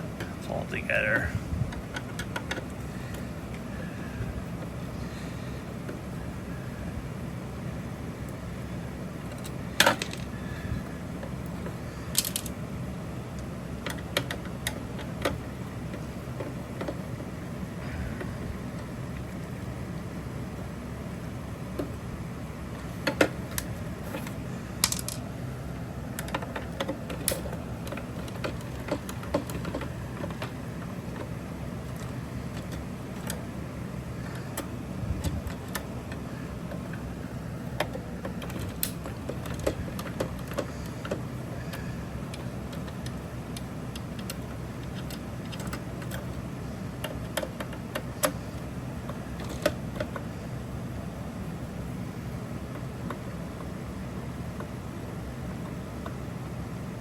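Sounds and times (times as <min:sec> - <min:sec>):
steady low hum: 0:00.0 - 0:57.0
tools tapping on plastic and metal: 0:01.7 - 0:03.2, 0:13.8 - 0:17.0, 0:23.0 - 0:25.2, 0:26.2 - 0:31.3, 0:37.8 - 0:46.4, 0:47.0 - 0:48.4.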